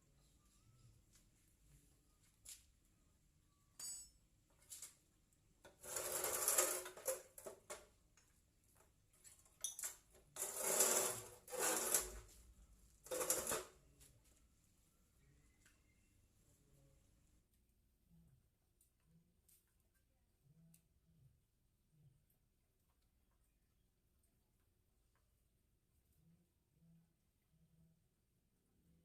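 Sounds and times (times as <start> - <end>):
metal scraping and rattling: 10.4 - 12.3.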